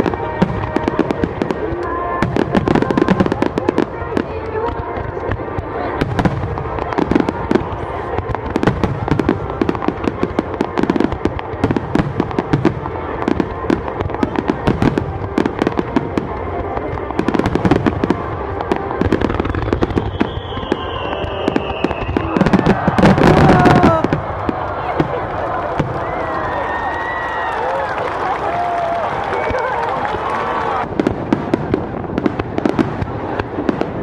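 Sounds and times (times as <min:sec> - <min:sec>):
fireworks bangs and crackles: 0:00.0 - 0:34.0
firework whistling tone: 0:19.0 - 0:24.1.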